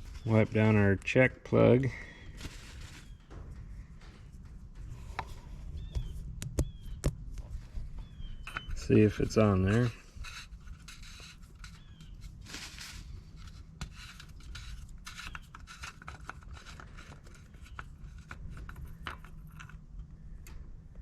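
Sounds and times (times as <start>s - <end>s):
low steady hum: 0.0s - 21.0s
dipstick clicking and scraping: 4.0s - 19.8s.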